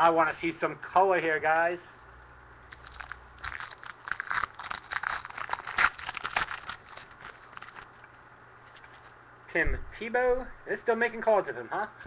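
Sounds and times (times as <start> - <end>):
wrapper tearing and crinkling: 2.6 - 8.0.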